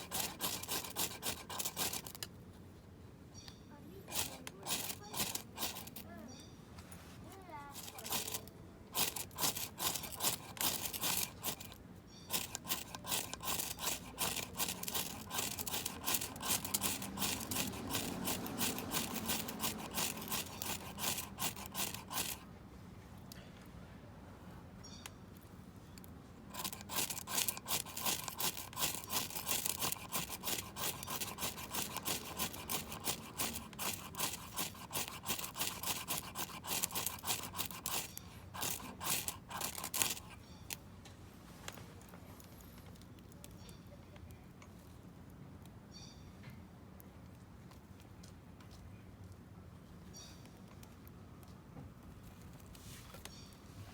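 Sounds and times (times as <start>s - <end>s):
hand saw cutting wood: 0.0s - 2.3s, 3.9s - 6.1s, 7.8s - 22.5s, 26.5s - 40.4s.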